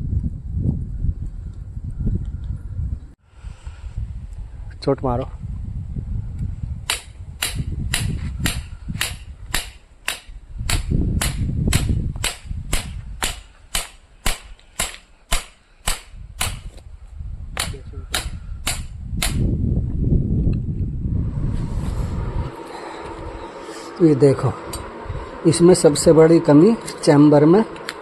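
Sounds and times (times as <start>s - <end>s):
hammer striking metal: 6.9s - 16.6s
low rumble: 16.2s - 28.0s.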